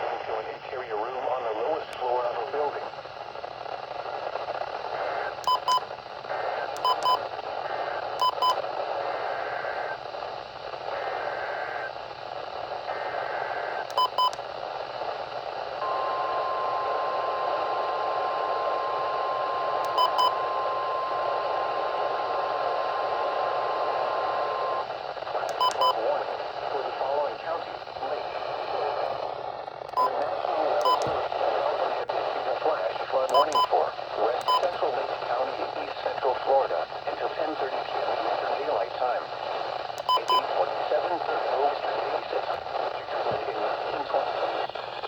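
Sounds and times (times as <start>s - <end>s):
radio hiss: 0.0s - 45.0s.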